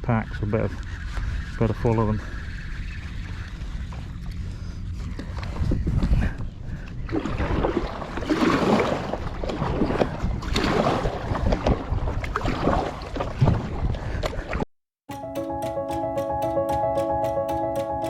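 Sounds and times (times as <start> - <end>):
wind on microphone: 0.0 - 14.6
paddle splashing in water: 7.1 - 14.6.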